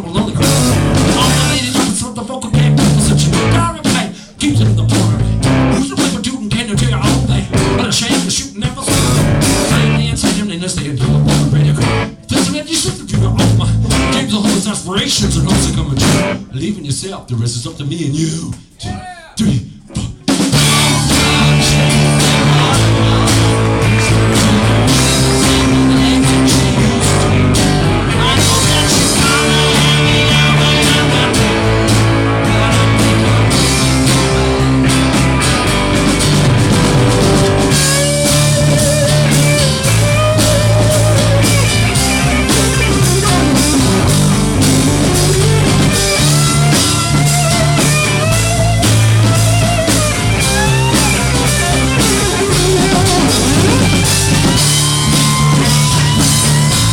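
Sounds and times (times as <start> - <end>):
rock band playing: 0.0 - 16.5, 19.9 - 56.9
lead guitar bending melody: 20.6 - 56.9.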